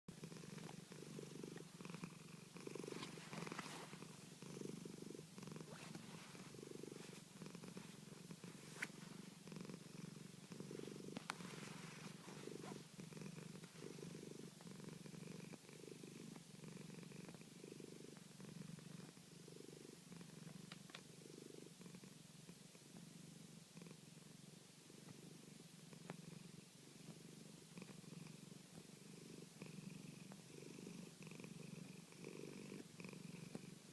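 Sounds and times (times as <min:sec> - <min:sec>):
cat purring: 0:00.1 - 0:33.9
faint clicks: 0:20.5 - 0:21.1.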